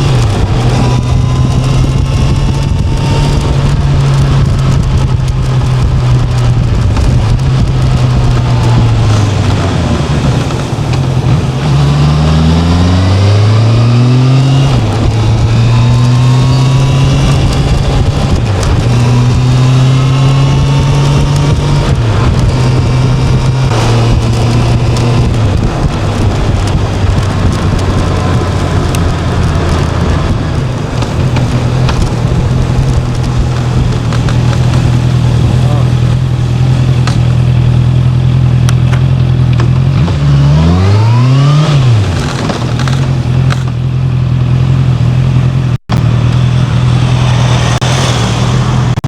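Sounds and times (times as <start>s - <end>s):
steady rush of noise: 0.0s - 38.8s
motorcycle engine running: 0.0s - 49.0s.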